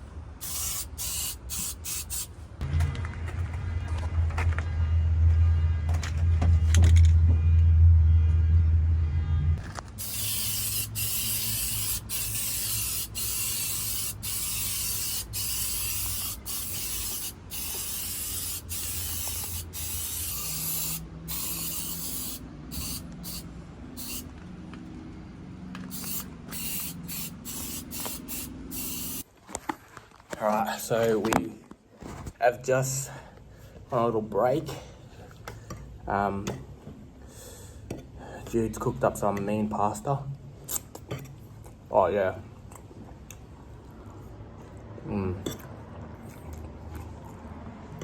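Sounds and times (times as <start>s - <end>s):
aerosol can spraying: 0.4s - 2.3s, 10.0s - 24.3s, 25.9s - 29.2s
loud low drone: 2.6s - 9.7s.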